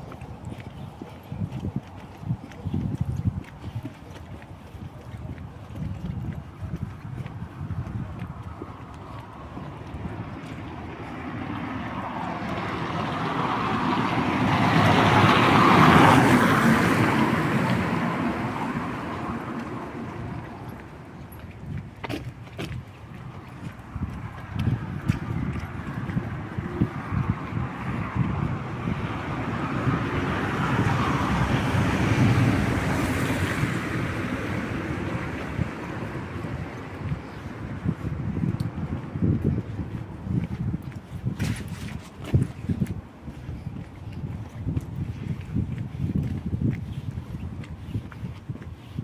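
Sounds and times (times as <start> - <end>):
car passing on wet street: 7.5 - 21.3, 23.1 - 46.9
tyres hissing on wet street: 28.8 - 37.6.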